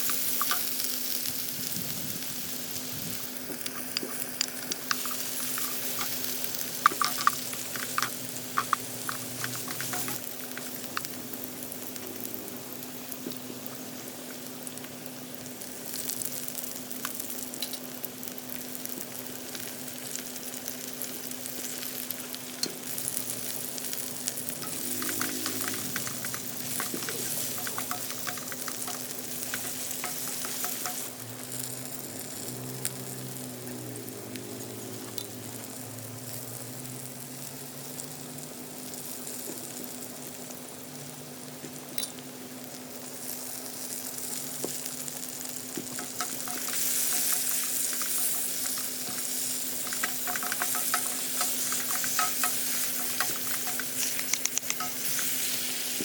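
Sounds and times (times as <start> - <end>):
food sizzling in a pan: 0.0 - 56.0
utensil clattering and scraping: 3.5 - 10.7, 24.5 - 31.1, 45.8 - 56.0.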